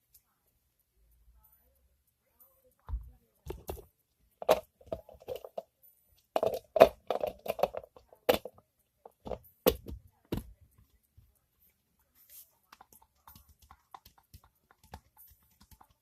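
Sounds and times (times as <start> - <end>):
plastic toys clicking and knocking: 2.8 - 11.5, 12.6 - 16.0
plastic toys rattling: 3.4 - 10.5.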